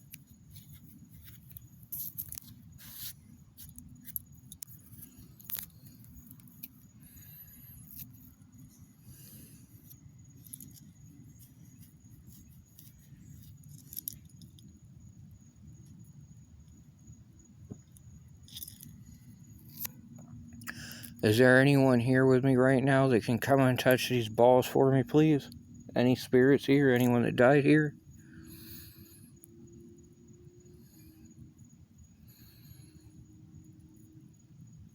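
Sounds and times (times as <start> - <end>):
faint clicks and rustles: 0.0 - 16.1.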